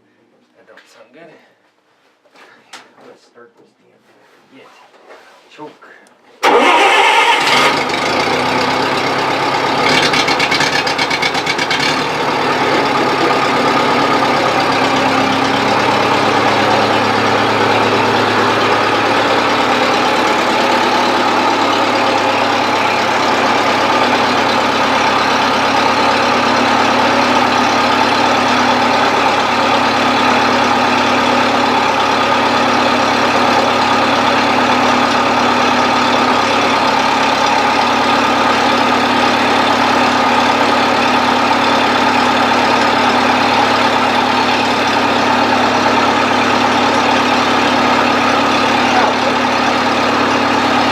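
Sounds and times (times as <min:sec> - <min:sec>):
gas engine idling: 0:06.4 - 0:50.9.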